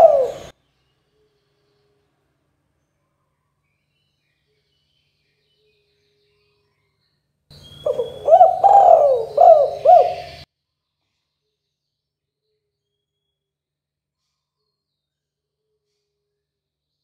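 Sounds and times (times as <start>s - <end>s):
dove cooing: 0.0s - 0.5s, 7.8s - 10.4s.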